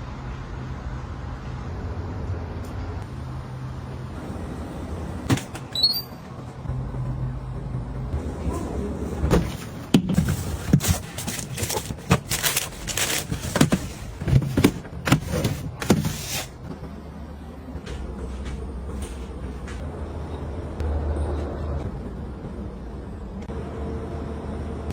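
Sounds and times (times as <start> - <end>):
household items clicking and knocking: 9.8 - 16.5.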